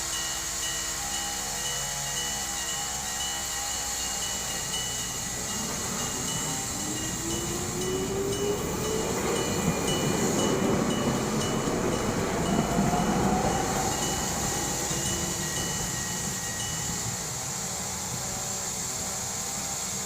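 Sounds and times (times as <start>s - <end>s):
train motor whine: 0.0s - 20.0s
level crossing bell ringing: 3.1s - 17.0s.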